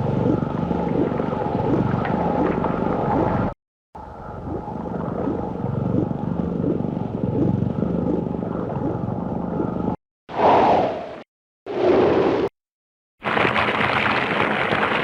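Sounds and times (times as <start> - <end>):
low throbbing monster drone: 0.0 - 10.0.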